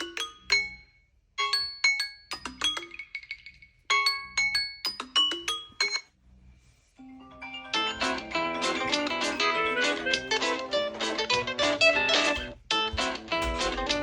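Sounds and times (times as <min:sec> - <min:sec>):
marimba-like phone ringtone: 0:00.0 - 0:06.1, 0:07.0 - 0:10.2.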